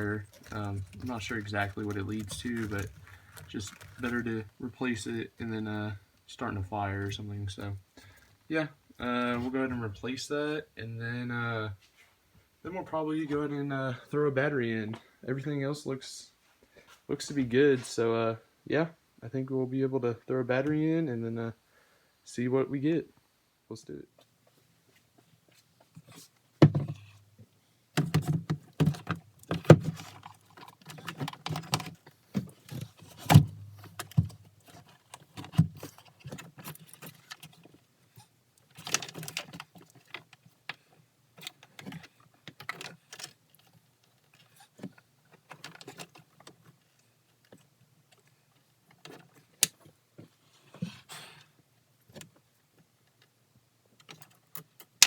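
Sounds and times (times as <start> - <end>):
hand tools clicking and rattling: 0.0 - 4.2.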